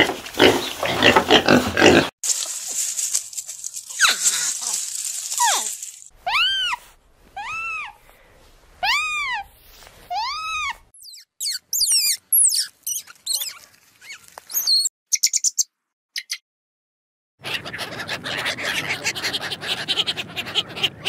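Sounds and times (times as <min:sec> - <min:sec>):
animal calls rising and falling: 0:04.0 - 0:08.0, 0:08.8 - 0:14.9.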